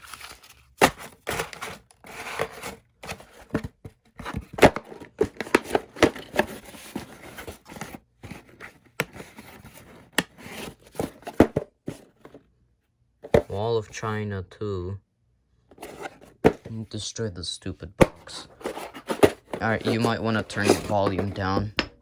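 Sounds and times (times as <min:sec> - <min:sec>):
cardboard box rustling and tearing: 0:00.0 - 0:12.2, 0:18.2 - 0:21.7.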